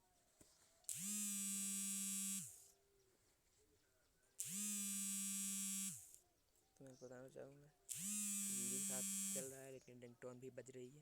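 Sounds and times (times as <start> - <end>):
mobile phone vibrating: 0.9 - 2.7, 4.4 - 6.2, 7.9 - 9.6.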